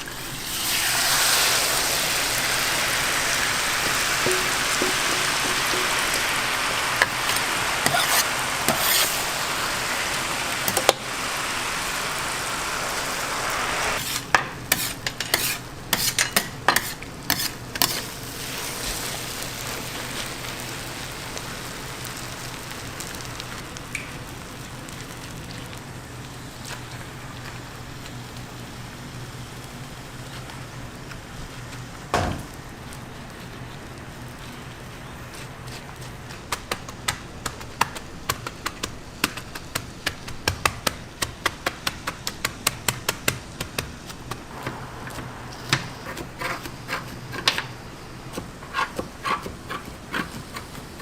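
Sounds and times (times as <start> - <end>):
food sizzling in a pan: 0.0 - 36.7, 44.2 - 51.0
utensil tapping a pan: 3.8 - 9.0.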